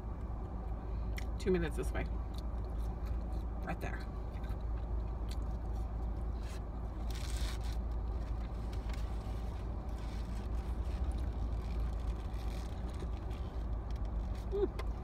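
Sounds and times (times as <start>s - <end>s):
car engine rumble inside cabin: 0.0s - 15.0s
scraping rustle: 6.4s - 14.5s.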